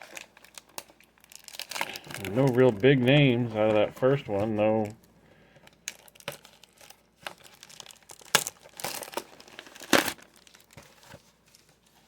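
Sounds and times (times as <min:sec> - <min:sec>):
packaging crinkling and tearing: 0:00.0 - 0:04.9, 0:05.6 - 0:12.0.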